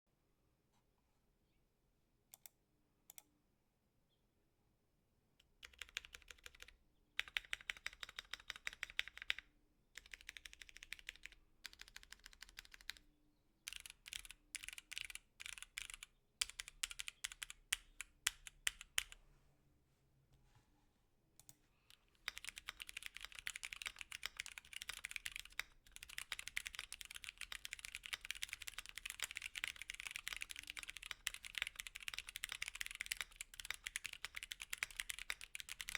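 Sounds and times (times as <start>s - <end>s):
typing on mechanical keyboard: 5.6s - 9.4s, 10.0s - 13.0s, 13.7s - 19.2s, 22.2s - 35.9s.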